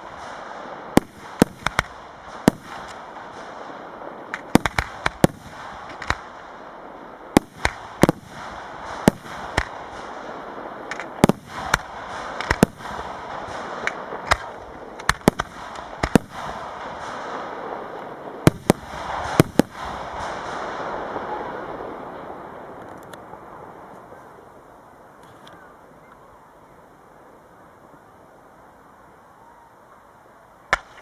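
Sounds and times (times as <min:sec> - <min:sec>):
fireworks bursting in sharp bangs: 0:00.0 - 0:23.4, 0:30.7 - 0:31.0
continuous rushing noise: 0:00.0 - 0:31.0.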